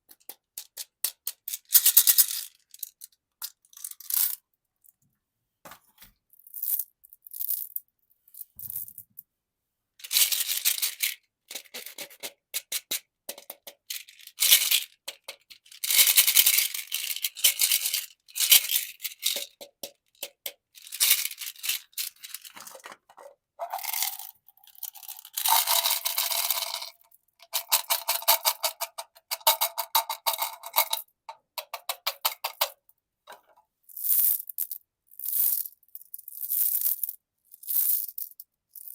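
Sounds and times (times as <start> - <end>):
loose candies rattling: 20.8 - 31.0.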